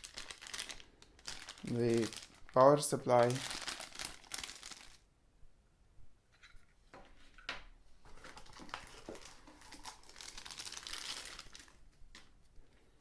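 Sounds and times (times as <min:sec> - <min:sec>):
packaging rustling: 0:00.0 - 0:05.0, 0:08.1 - 0:12.4.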